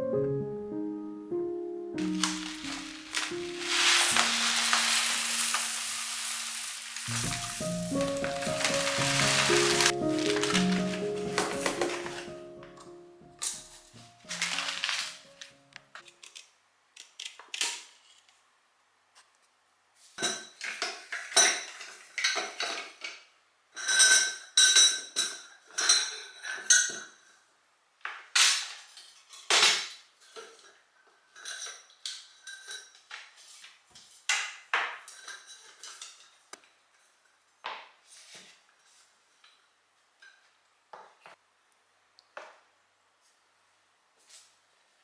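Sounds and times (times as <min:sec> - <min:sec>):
dishes and cutlery clattering: 0:02.0 - 0:12.4, 0:13.4 - 0:15.3, 0:20.2 - 0:23.1, 0:23.7 - 0:27.3, 0:29.3 - 0:33.4, 0:34.2 - 0:36.5.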